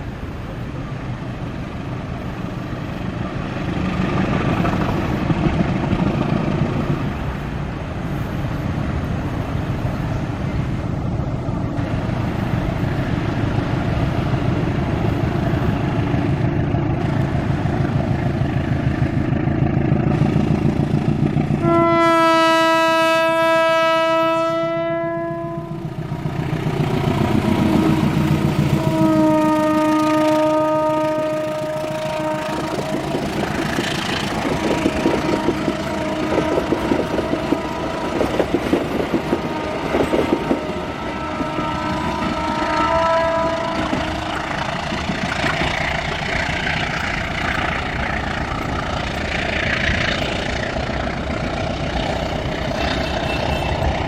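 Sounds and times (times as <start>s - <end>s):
train rumbling: 0.0s - 54.0s
locomotive horn blast: 21.6s - 25.9s, 27.2s - 33.3s, 34.4s - 45.1s, 52.7s - 54.0s.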